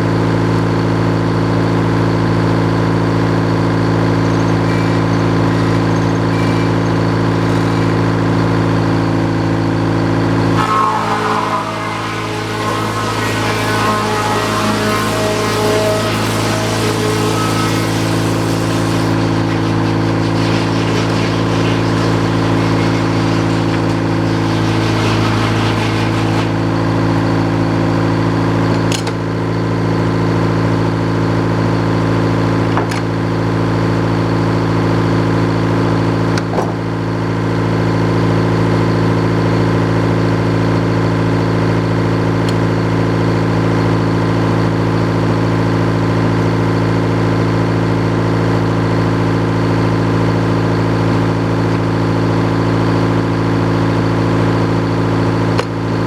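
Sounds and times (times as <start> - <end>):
sawmill engine running: 2.7 - 28.8
hiss: 10.5 - 26.8.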